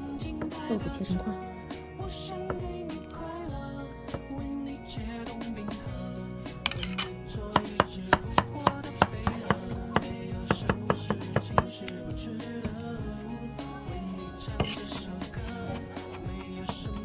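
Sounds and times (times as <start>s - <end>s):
knife cutting tofu on a board: 6.6s - 12.1s, 14.6s - 17.0s.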